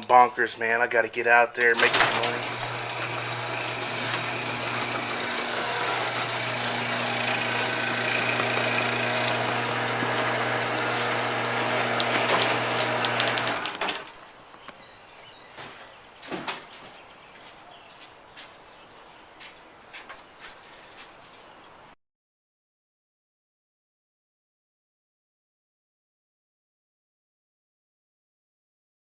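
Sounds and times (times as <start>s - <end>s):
knocks and clicks: 1.6s - 14.1s.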